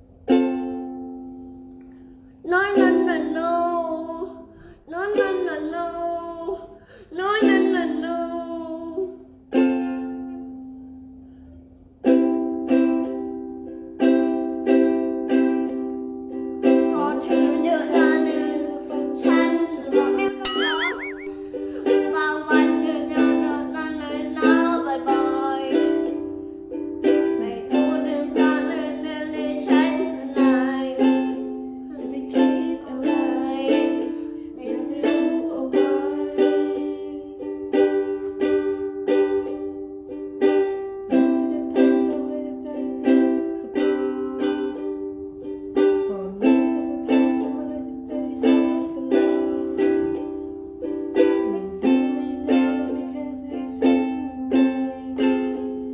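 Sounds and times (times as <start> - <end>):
person singing: 2.5 - 9.2, 16.6 - 26.3, 27.0 - 39.6, 40.4 - 55.9
strummed acoustic string instrument: 12.0 - 55.9.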